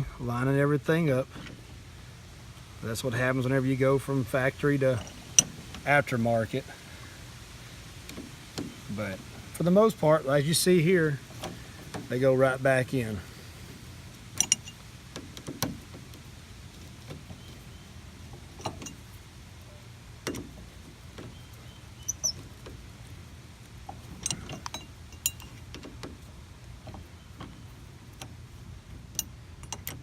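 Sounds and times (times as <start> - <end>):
hand tool clicks and metallic taps: 14.4 - 14.8.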